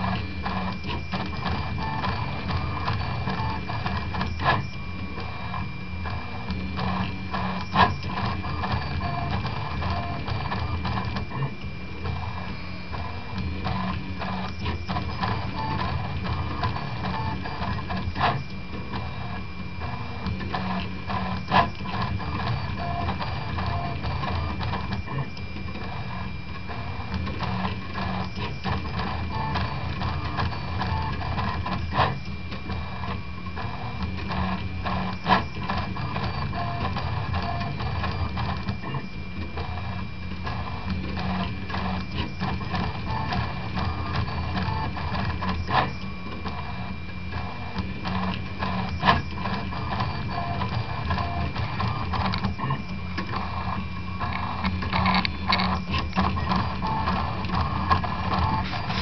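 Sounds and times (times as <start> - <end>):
steady high whine: 0.0 - 59.0
stepper motors whirring: 47.5 - 59.0.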